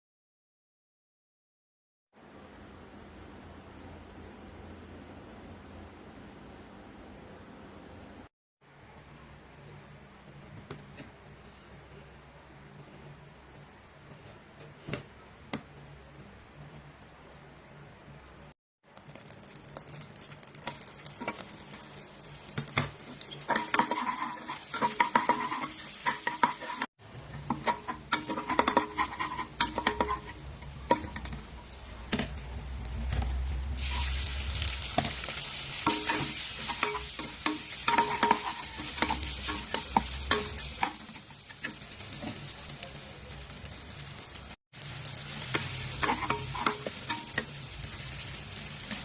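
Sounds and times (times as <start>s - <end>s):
hot oil sizzling: 18.8s - 49.0s
utensil scraping cookware: 23.2s - 32.4s, 35.8s - 42.4s, 45.5s - 47.5s.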